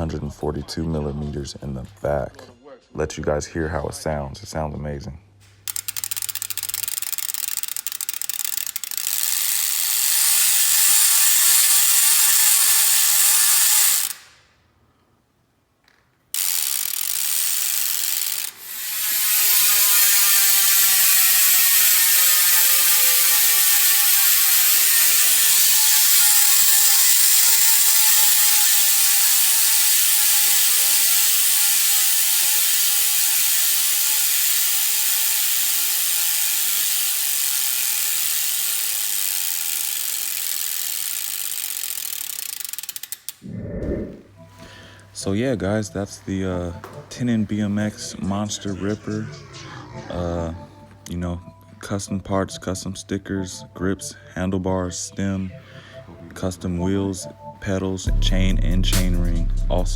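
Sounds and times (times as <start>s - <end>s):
bicycle hub ratchet buzzing: 5.6s - 14.5s, 16.2s - 43.4s, 58.1s - 59.9s.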